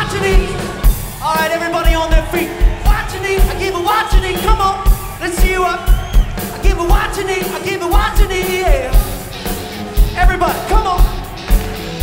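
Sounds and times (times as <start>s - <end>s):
live rock band playing: 0.0s - 12.0s
kick drum beat: 1.9s - 7.2s.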